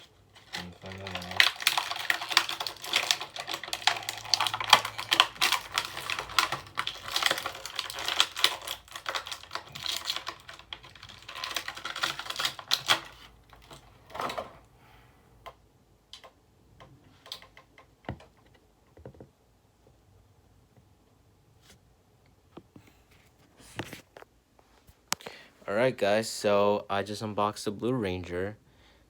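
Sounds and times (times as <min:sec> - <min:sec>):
toy packaging crinkling: 0:00.0 - 0:14.6.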